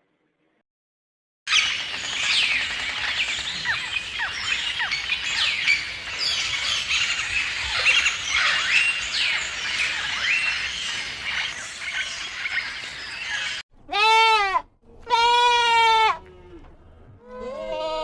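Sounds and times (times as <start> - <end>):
chorus of bird calls: 1.5 - 13.6.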